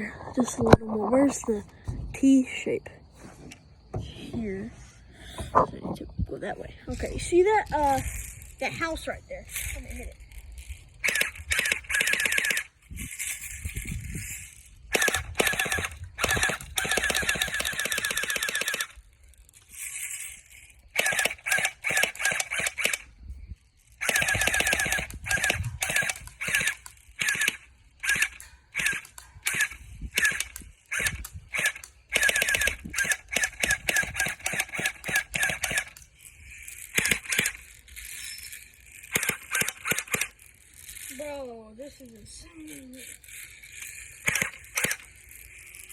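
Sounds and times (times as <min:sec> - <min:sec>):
airsoft gun firing bursts: 0:11.0 - 0:12.7, 0:14.9 - 0:19.0, 0:20.9 - 0:23.1, 0:24.0 - 0:36.0, 0:36.9 - 0:37.6, 0:39.1 - 0:40.3, 0:44.2 - 0:45.1.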